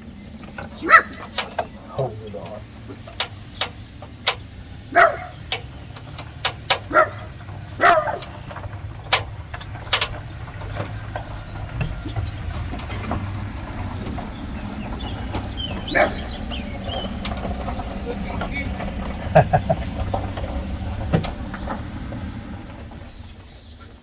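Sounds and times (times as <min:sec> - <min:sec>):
vehicle passing: 0:00.0 - 0:24.0
light fixture clicks and knocks: 0:00.6 - 0:01.8, 0:03.0 - 0:04.6, 0:05.5 - 0:06.9, 0:09.1 - 0:10.2
dog barking: 0:00.8 - 0:02.2, 0:04.9 - 0:05.6, 0:06.8 - 0:08.4, 0:15.9 - 0:16.4.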